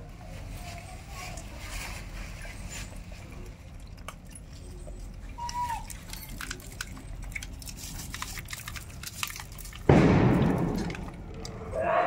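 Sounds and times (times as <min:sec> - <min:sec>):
monkey chewing food: 0:03.1 - 0:11.7.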